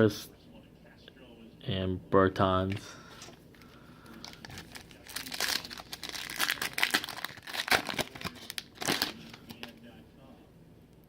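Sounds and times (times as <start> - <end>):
foil wrapper crinkling and tearing: 3.6 - 9.8.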